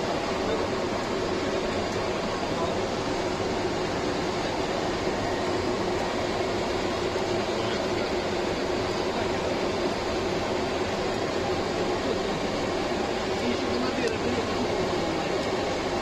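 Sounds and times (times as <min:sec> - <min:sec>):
airplane cockpit engine drone: 0:00.0 - 0:16.0.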